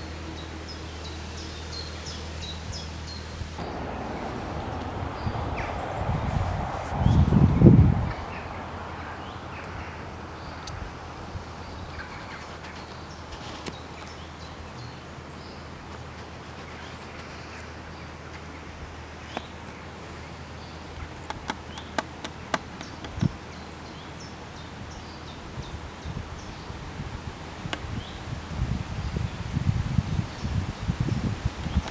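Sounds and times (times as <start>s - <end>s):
steady low hum: 0.0s - 30.2s
sharp clicks: 21.0s - 23.4s.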